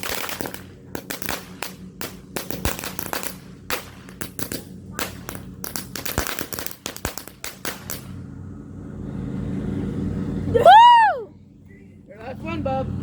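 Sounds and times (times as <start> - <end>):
firecrackers popping: 0.0 - 8.2
low rumble: 0.0 - 13.0.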